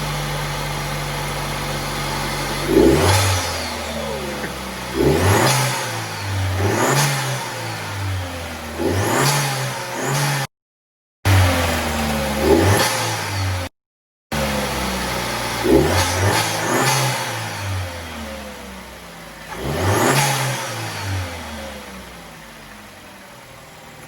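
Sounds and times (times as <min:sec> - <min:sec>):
car engine idling: 0:00.0 - 0:08.8
car engine revving: 0:00.0 - 0:10.5, 0:11.3 - 0:13.7, 0:14.3 - 0:22.7.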